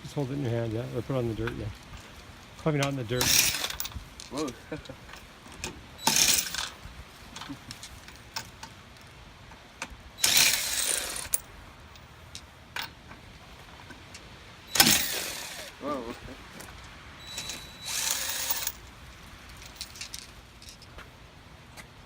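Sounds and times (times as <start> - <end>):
metal hand tools clattering: 2.7 - 6.8, 10.2 - 11.4, 14.7 - 16.2, 17.2 - 18.8
sharp metal clack: 3.2 - 3.9, 14.7 - 15.5.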